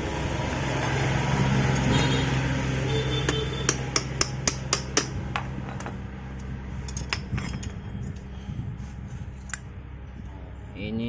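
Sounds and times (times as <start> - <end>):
steady low hum: 3.9 - 11.0
metal tools clinking: 5.7 - 8.3.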